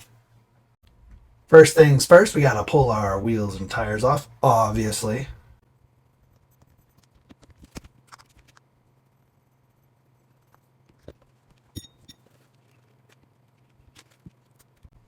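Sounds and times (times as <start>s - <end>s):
low steady hum: 0.0s - 6.4s.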